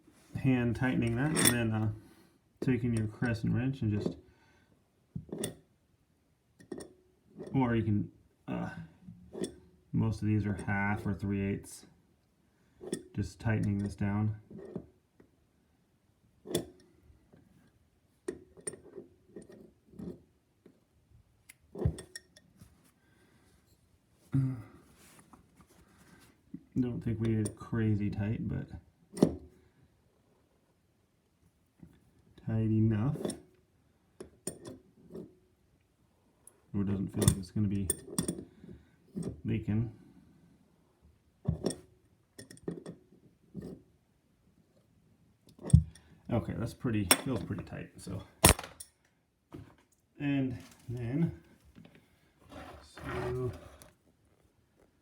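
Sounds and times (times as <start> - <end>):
wrench clinking on metal fitting: 1.1 - 1.8.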